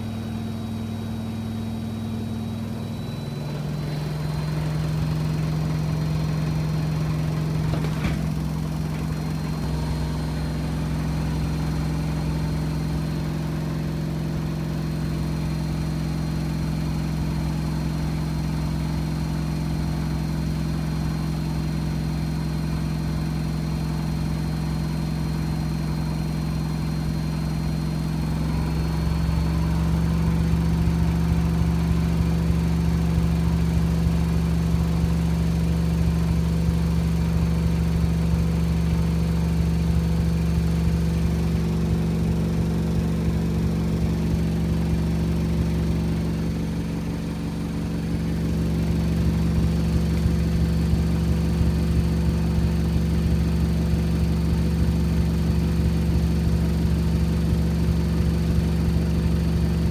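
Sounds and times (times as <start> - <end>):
washing machine spinning: 0.0 - 18.6.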